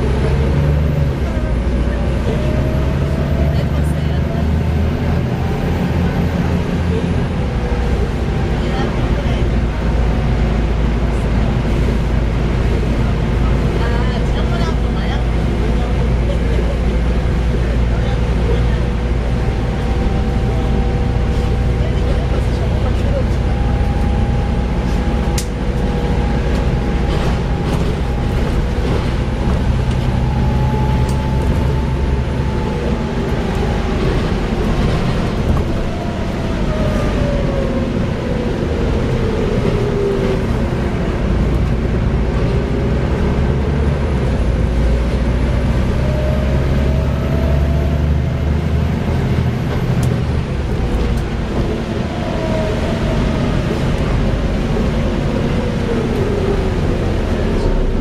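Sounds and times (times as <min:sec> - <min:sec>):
bus diesel engine droning: 0:00.0 - 0:58.0
transmission whine: 0:18.6 - 0:42.0.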